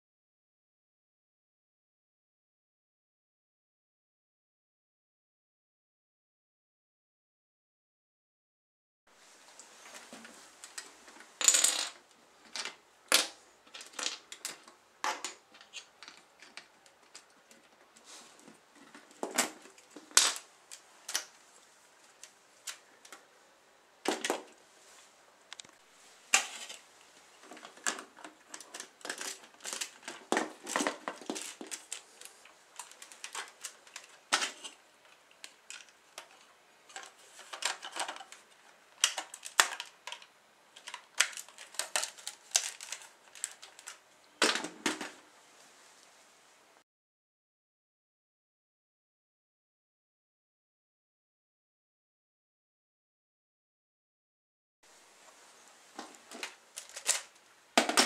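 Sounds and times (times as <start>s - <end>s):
plastic parts clicking: 11.5s - 17.8s, 27.4s - 45.2s, 56.3s - 58.0s.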